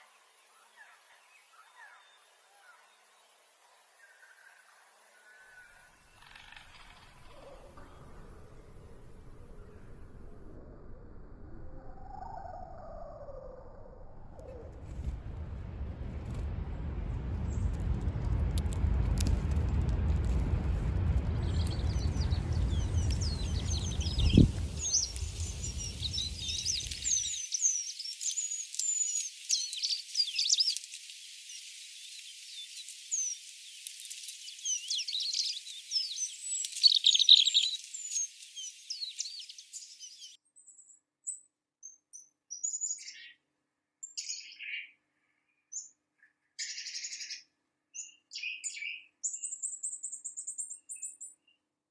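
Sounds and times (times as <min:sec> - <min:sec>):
low rumbling noise: 0:06.1 - 0:27.3
small birds chirping: 0:18.5 - 0:43.4, 0:44.0 - 0:51.7.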